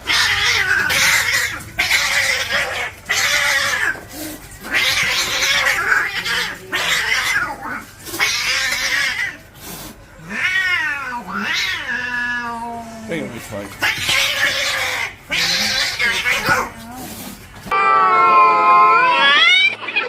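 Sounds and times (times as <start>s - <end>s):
cats yowling and growling: 0.0s - 20.0s.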